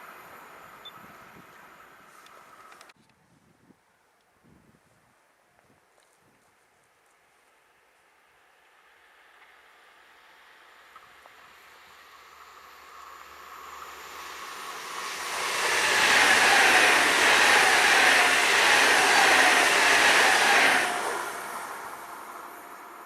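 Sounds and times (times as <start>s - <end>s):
train passing on track: 0.0s - 2.9s, 7.5s - 23.0s
falling whine: 11.2s - 23.0s.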